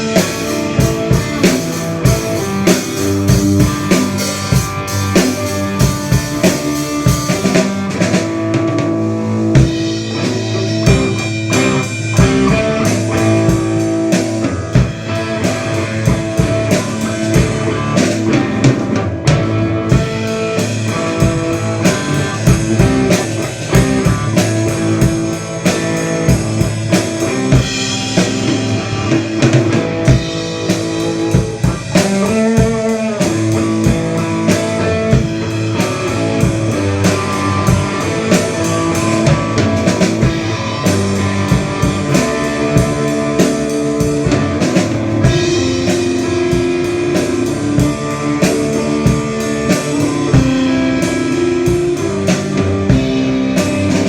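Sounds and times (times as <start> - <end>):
drum kit hits: 0.0 - 54.0
electric guitar notes: 0.0 - 54.0.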